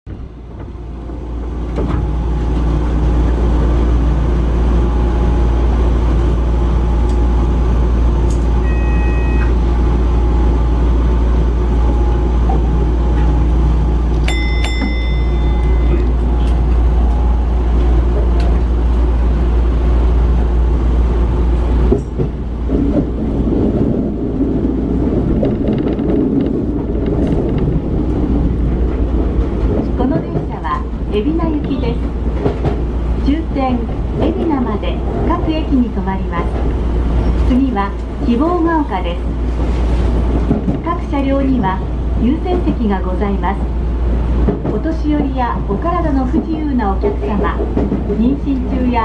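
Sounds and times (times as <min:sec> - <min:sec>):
electric train rumble and hum: 0:00.0 - 0:49.0
brief high tones: 0:08.6 - 0:09.6.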